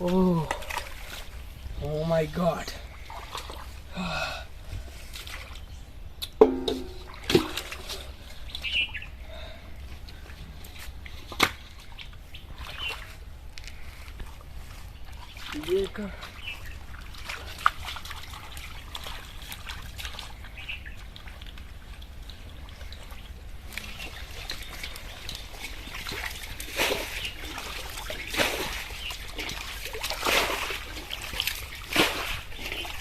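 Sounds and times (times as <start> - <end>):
hands splashing in pond water: 2.9 - 3.8, 4.9 - 9.0, 10.7 - 33.0
water trickling: 5.0 - 9.1, 13.7 - 33.0.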